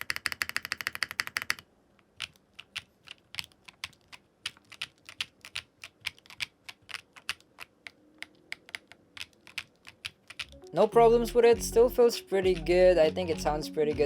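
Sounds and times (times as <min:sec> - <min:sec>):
mechanical keyboard key clicks: 0:00.0 - 0:01.6, 0:02.2 - 0:10.6.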